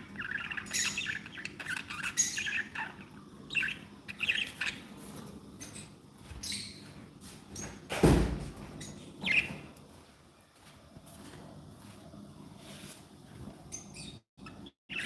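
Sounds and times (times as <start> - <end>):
budgerigars chirping: 0.0 - 4.9, 8.8 - 9.6, 13.8 - 15.0.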